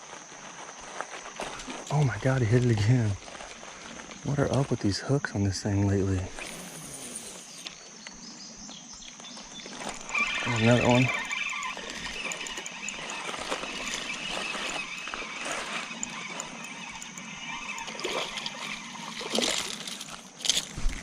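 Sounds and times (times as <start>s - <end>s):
fish thrashing at surface: 17.6s - 20.8s
water splashing and sloshing: 17.6s - 21.0s.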